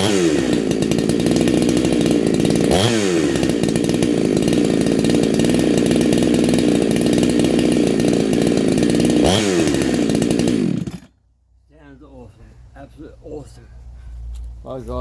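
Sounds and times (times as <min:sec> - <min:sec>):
chainsaw running at high revs: 0:00.0 - 0:11.1.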